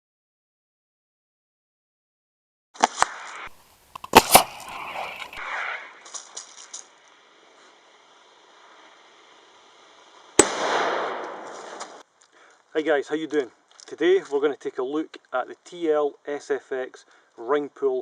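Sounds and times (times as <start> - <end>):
pyrotechnic grenade bangs: 10.4 - 11.5.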